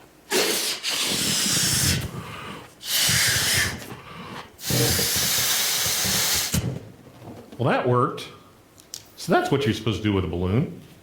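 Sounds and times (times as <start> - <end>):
man blowing up balloon: 0.2 - 6.7
breath drawn in: 0.3 - 6.6.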